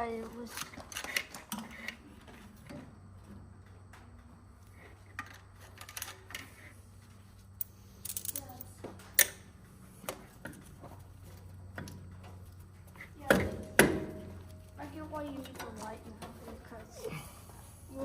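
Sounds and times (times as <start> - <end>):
metal parts clicking and knocking: 7.6 - 9.4.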